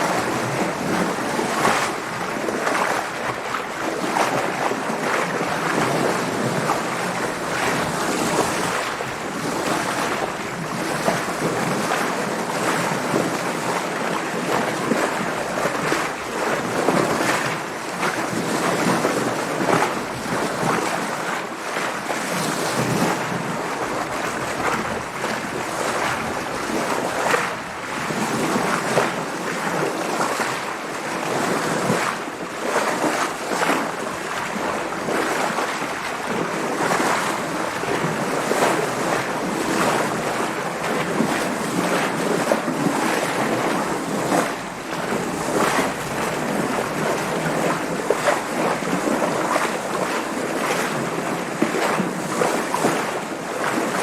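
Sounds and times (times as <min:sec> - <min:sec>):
water splashing against boat: 0:00.0 - 0:54.0
wind: 0:00.0 - 0:54.0.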